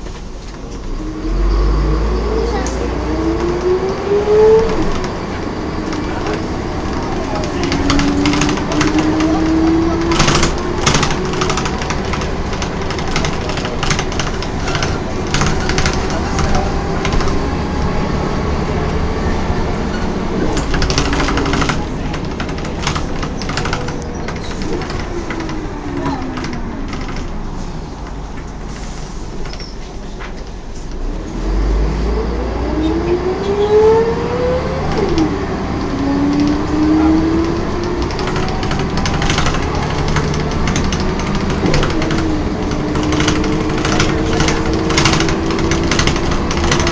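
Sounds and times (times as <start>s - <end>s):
bus engine and road noise: 0.0s - 46.9s
bodywork rattles and clicks: 5.8s - 17.7s, 19.9s - 30.5s, 34.9s - 46.9s.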